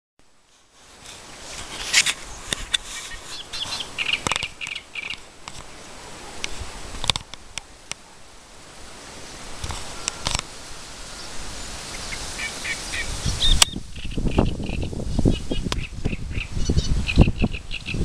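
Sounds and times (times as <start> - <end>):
steady outdoor hiss: 0.2 - 18.0
birds chirping: 2.3 - 5.3, 11.0 - 18.0.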